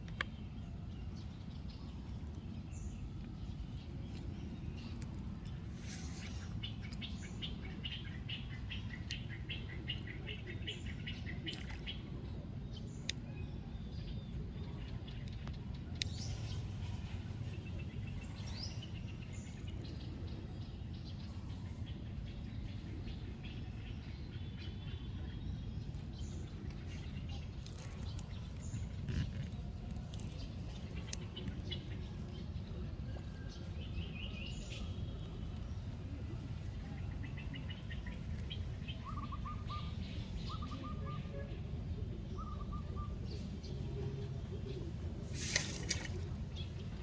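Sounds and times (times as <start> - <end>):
low background rumble: 0.0 - 47.0
birds chirping and calling: 36.6 - 41.4.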